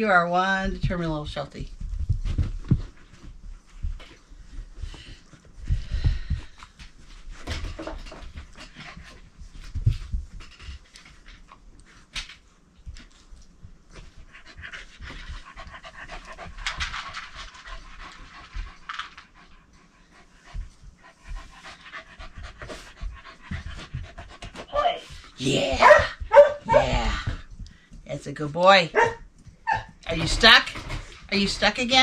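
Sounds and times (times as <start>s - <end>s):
dog panting fast: 12.9s - 27.8s.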